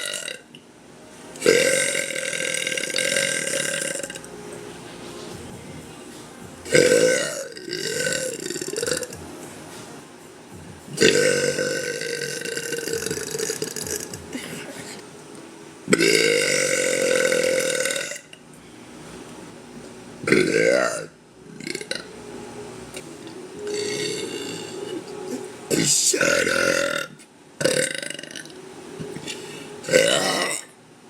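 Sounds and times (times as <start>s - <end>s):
woman burping: 1.4s - 4.2s, 6.7s - 9.2s, 11.0s - 15.0s, 16.0s - 18.2s, 20.3s - 21.1s, 23.7s - 28.5s, 29.9s - 30.7s.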